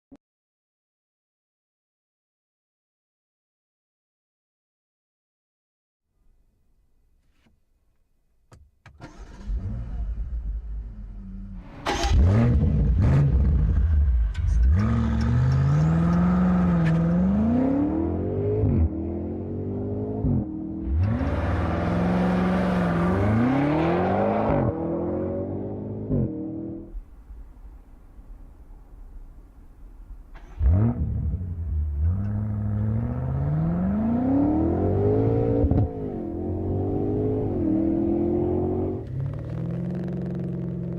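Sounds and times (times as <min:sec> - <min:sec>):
car engine revving: 0:09.0 - 0:26.9, 0:30.3 - 0:40.9.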